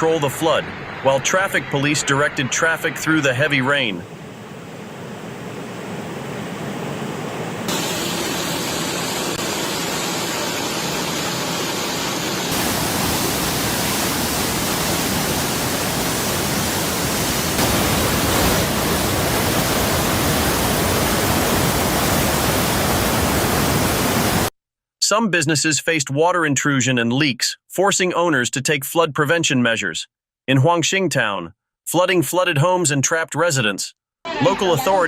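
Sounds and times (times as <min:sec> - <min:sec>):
rushing rain and floodwater: 0:12.5 - 0:24.5.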